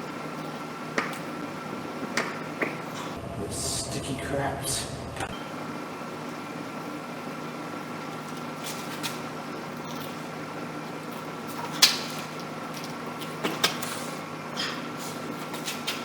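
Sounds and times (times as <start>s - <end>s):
steady hum: 2.8s - 7.0s.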